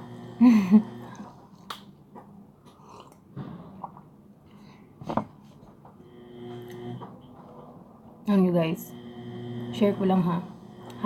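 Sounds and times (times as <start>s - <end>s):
woman chewing food: 2.6s - 4.0s.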